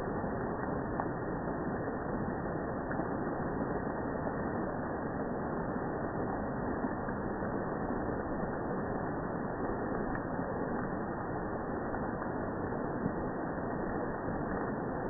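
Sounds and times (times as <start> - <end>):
slowed rain on foliage: 0.0 - 15.0
faint tick: 0.5 - 1.2, 9.8 - 11.0.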